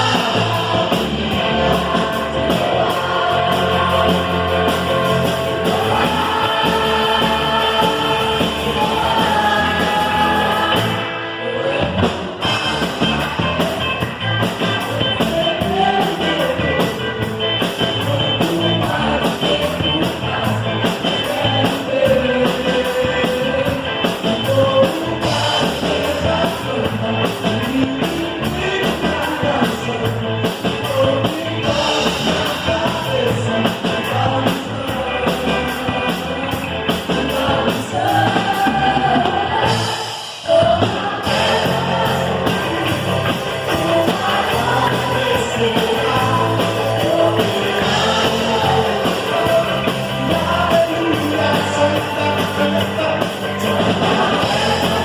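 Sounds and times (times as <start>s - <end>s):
drum kit: 0.0s - 55.0s
person singing: 0.0s - 55.0s
worship band playing rock song: 0.0s - 55.0s.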